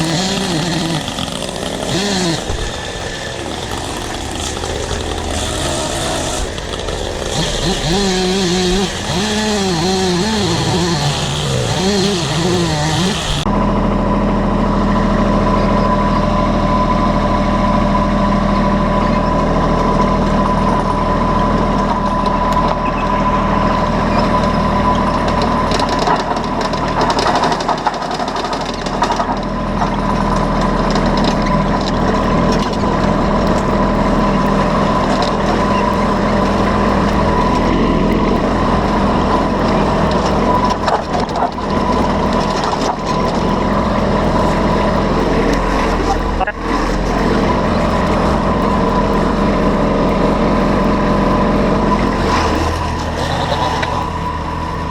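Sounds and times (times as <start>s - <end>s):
large engine running: 0.0s - 54.9s
high whine: 29.4s - 54.9s.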